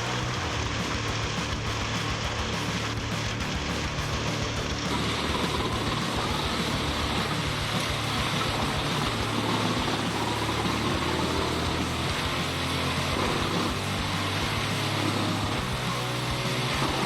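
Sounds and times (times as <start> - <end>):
wood chipper engine running: 0.0 - 17.0.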